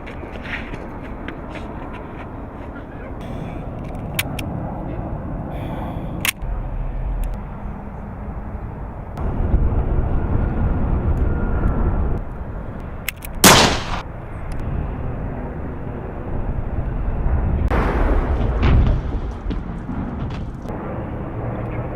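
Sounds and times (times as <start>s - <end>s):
low engine rumble: 1.1s - 13.0s
loud gunshot-like bang: 13.4s - 14.0s.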